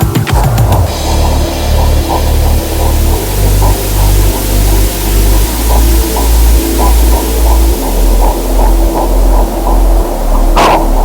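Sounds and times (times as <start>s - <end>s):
white-noise hiss: 0.4s - 11.0s.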